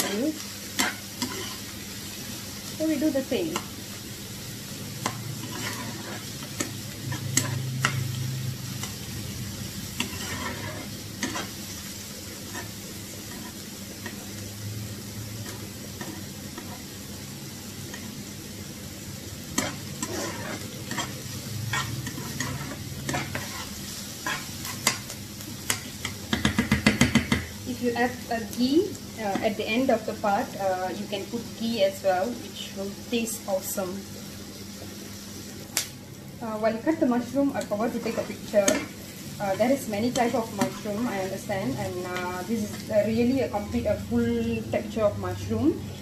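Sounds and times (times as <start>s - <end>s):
spatula scraping a pan: 0.0s - 1.8s, 5.0s - 9.1s, 9.8s - 11.6s, 12.4s - 14.3s, 15.4s - 16.9s, 19.5s - 27.5s, 37.7s - 43.1s
onions sizzling in hot oil: 0.0s - 46.0s.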